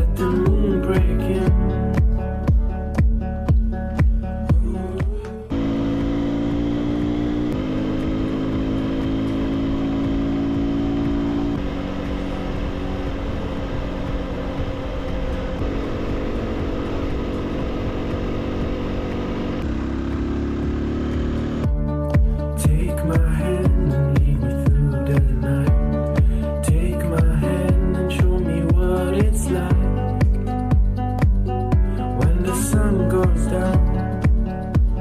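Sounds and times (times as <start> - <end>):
motorcycle engine running: 0.0 - 35.0
rushing noise: 11.5 - 19.8.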